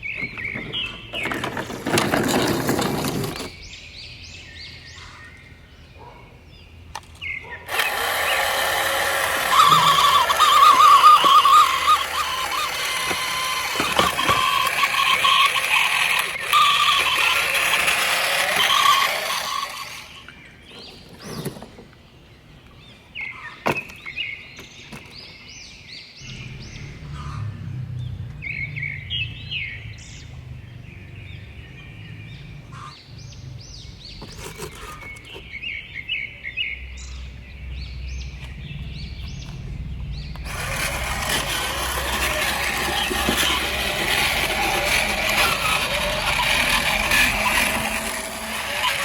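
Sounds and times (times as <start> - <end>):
birds chirping: 0.0 - 49.0.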